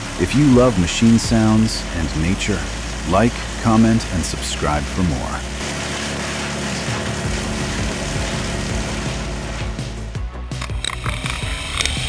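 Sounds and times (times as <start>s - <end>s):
music with steady beat: 0.0s - 3.6s, 4.4s - 12.0s.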